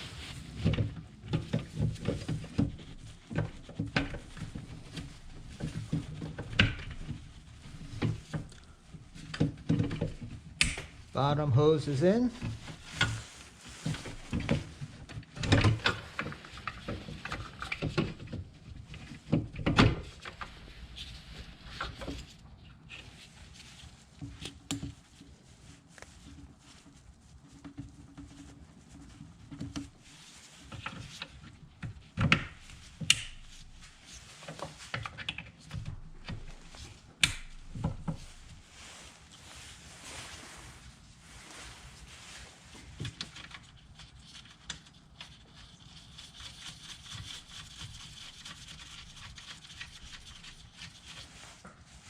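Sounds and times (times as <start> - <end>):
hands fitting hoses and connectors: 0.4 - 18.4, 30.6 - 33.8, 34.4 - 38.9.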